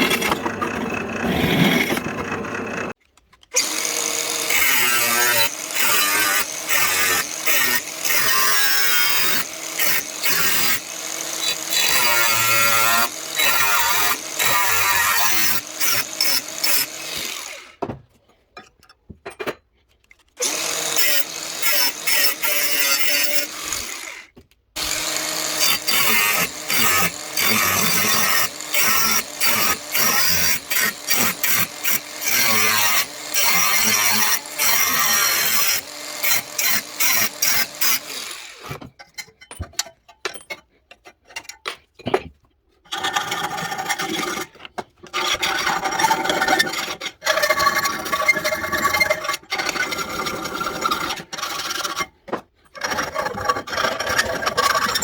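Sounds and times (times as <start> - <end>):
workshop tool noise: 0.0 - 42.3.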